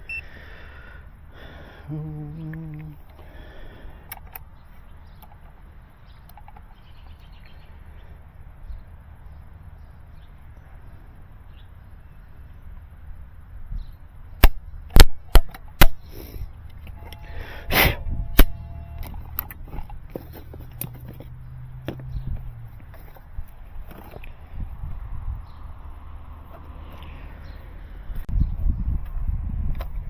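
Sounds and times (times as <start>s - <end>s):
low hum: 16.6s - 23.5s
short steady tone: 16.9s - 19.5s.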